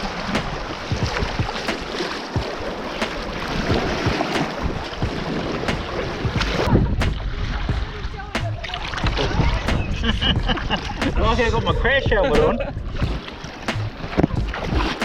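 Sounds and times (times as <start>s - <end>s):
river water rushing: 0.0s - 11.2s, 12.8s - 15.0s
small sharp splashes: 0.0s - 11.2s
heavy water slosh: 0.0s - 15.0s.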